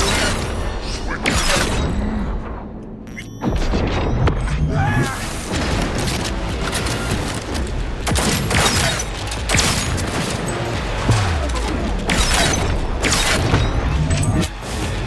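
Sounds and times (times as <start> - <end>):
game voices: 0.0 - 2.7, 4.5 - 7.6.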